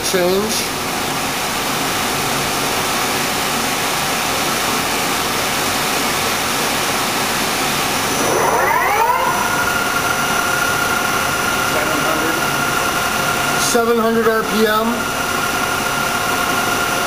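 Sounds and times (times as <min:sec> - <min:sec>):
lathe mechanical hum: 0:00.0 - 0:17.0
spindle rising whine: 0:07.1 - 0:13.7.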